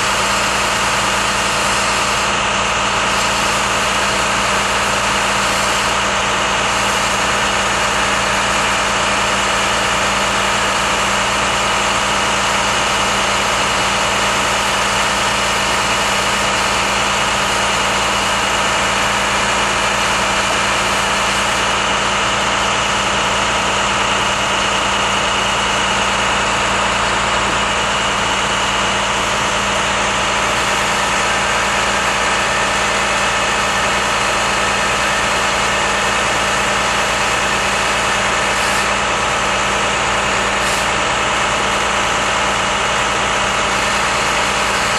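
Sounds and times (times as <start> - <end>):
engine idling: 0.0 - 44.9.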